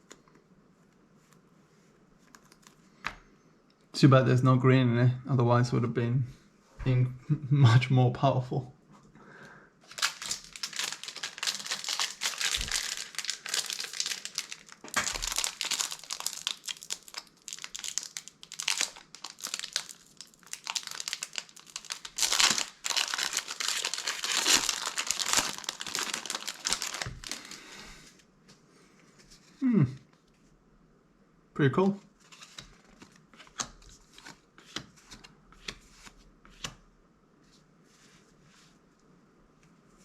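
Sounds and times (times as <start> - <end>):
plastic packaging crinkling: 9.8 - 27.7.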